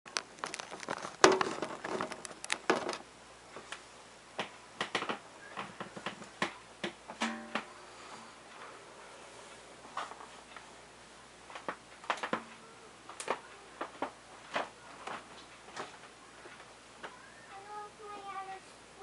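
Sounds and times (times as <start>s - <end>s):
acoustic guitar plucked notes: 7.2s - 7.7s.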